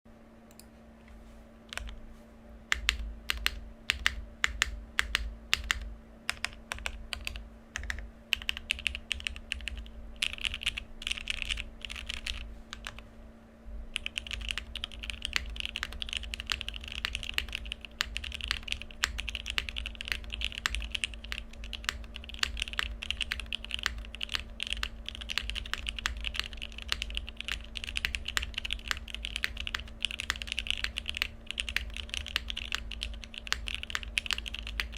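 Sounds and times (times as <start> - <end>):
fast typing on keyboard: 1.7 - 2.0, 2.7 - 13.0, 14.0 - 34.9
mechanical keyboard key presses: 2.8 - 13.0.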